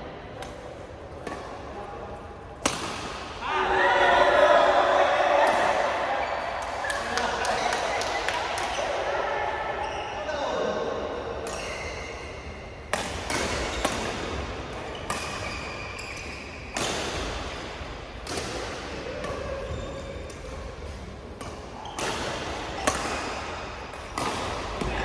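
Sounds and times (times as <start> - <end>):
racket striking shuttlecock: 12.9 - 14.4, 20.8 - 25.0.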